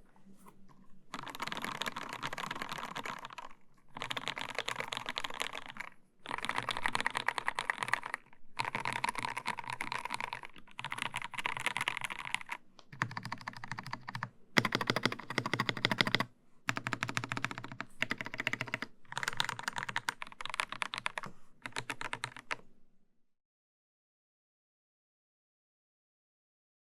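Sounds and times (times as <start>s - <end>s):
fast typing on mechanical keyboard: 1.1s - 22.6s.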